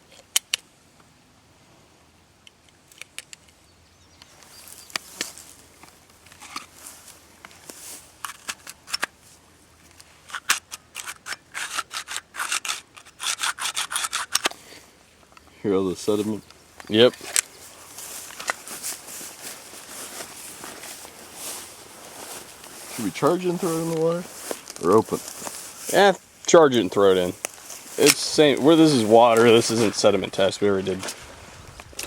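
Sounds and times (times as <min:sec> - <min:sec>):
pistol action scraping and clicking: 0:08.2 - 0:09.2, 0:09.9 - 0:14.6, 0:16.4 - 0:17.6, 0:18.3 - 0:18.6.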